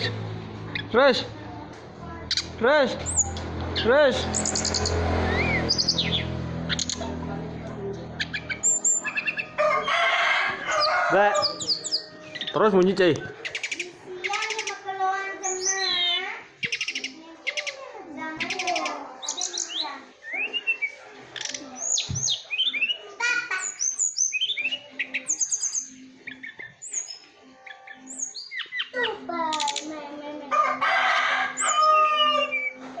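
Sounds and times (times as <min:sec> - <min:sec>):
small songbird singing: 0:02.2 - 0:07.2, 0:07.9 - 0:09.6, 0:10.7 - 0:23.0, 0:23.6 - 0:30.0.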